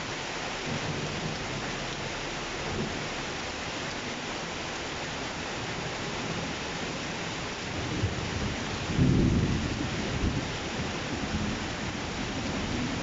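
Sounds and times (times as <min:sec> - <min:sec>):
heavy rain falling: 0:00.0 - 0:13.0
low rumble of thunder: 0:00.6 - 0:03.2, 0:05.8 - 0:13.0.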